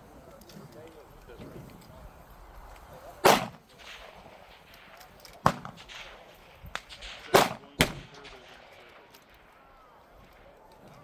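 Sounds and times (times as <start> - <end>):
rifle shots with echo: 3.2 - 10.4.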